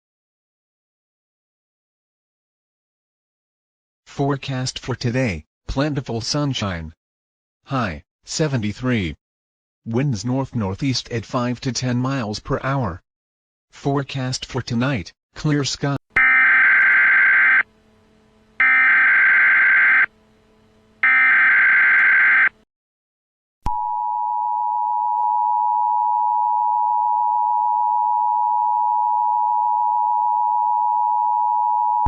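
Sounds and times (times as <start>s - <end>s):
screechy digital data bursts: 16.2s - 17.7s, 18.6s - 20.1s, 21.0s - 22.5s.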